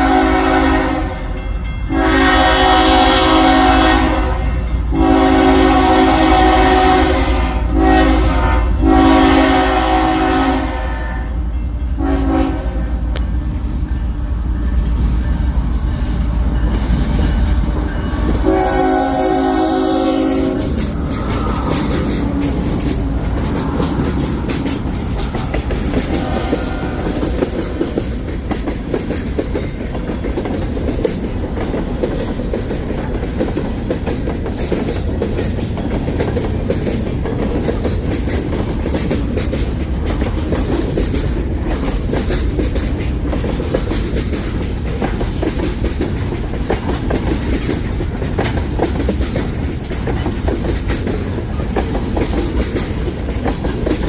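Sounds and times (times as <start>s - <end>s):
train horn: 0.0s - 13.2s, 16.3s - 22.6s, 23.8s - 27.8s
train rumbling past: 0.0s - 54.0s
wheels clacking over rail joints: 11.5s - 54.0s.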